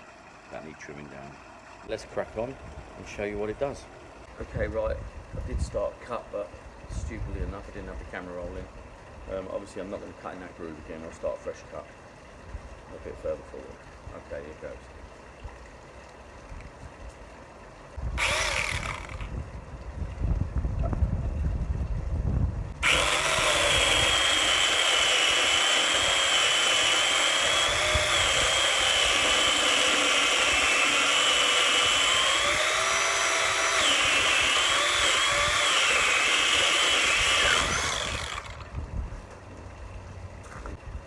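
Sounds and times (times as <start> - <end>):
electric pole saw cutting timber: 18.2 - 19.4, 22.8 - 38.8.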